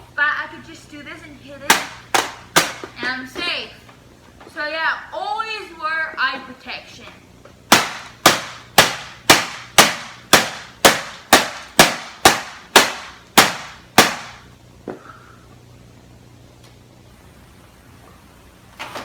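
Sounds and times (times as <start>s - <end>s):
hammer striking a printer: 1.7s - 2.9s, 7.7s - 14.4s.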